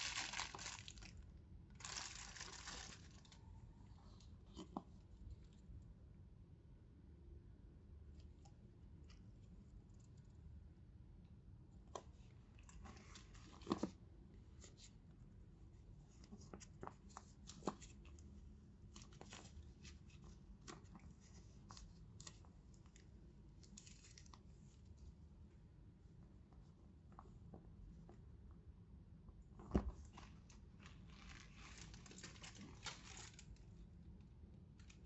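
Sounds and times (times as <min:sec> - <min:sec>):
packaging rustling: 0:00.0 - 0:01.2, 0:01.8 - 0:03.4, 0:30.2 - 0:33.6.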